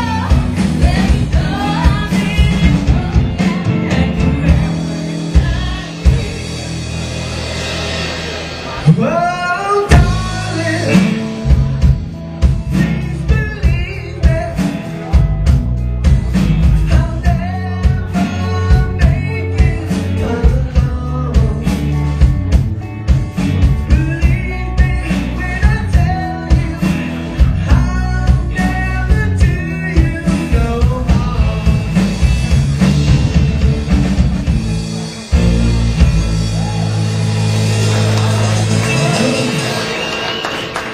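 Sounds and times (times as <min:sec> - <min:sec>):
person singing: 0:00.0 - 0:06.9, 0:08.7 - 0:11.8, 0:12.7 - 0:15.4, 0:16.1 - 0:22.3
drums beat: 0:00.0 - 0:40.9
live rock band playing: 0:00.0 - 0:40.9.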